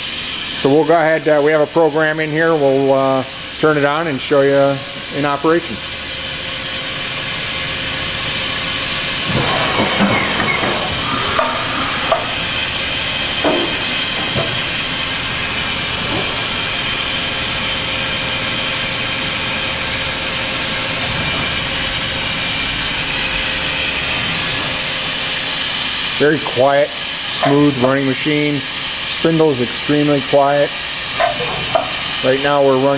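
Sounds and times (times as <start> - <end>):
machining center running: 0.0 - 32.9
knocks and rattles: 9.2 - 14.9.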